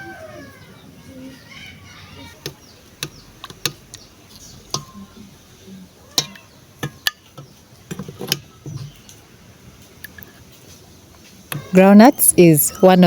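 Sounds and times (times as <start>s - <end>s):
sharp clicks and light knocks: 2.4s - 5.0s, 6.2s - 9.2s.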